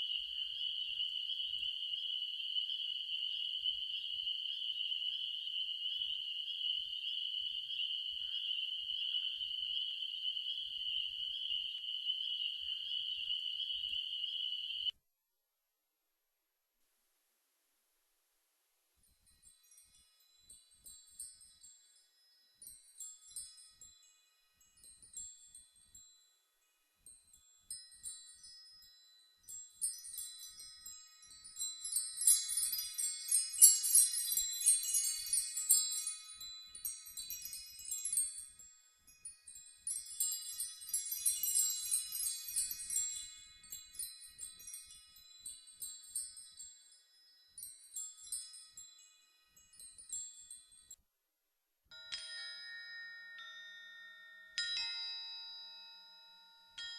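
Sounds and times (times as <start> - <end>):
metal chimes tinkling: 19.0 - 51.0, 51.9 - 56.9.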